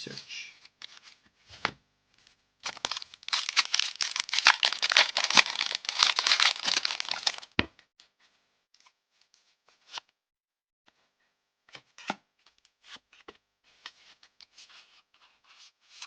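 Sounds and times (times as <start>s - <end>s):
foil wrapper crinkling and tearing: 2.6s - 7.6s.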